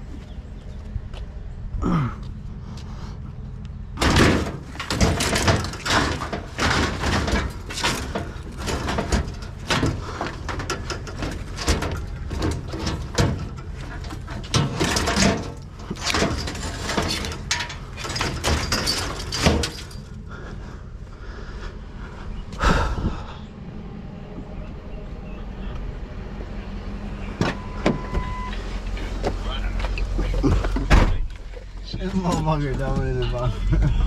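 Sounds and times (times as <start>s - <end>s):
steady low rumble: 0.0s - 34.0s
scrap metal clanking: 4.0s - 20.3s.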